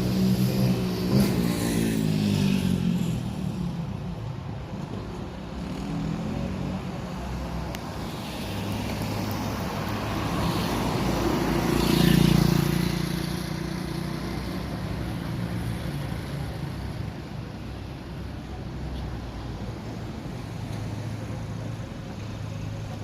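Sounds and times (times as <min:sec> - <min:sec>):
car passing by: 0:05.6 - 0:17.0.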